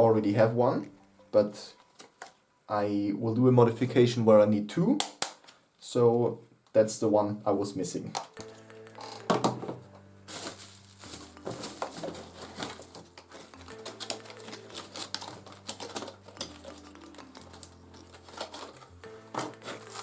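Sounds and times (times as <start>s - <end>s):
soft background music: 0.0s - 5.0s, 6.0s - 20.0s.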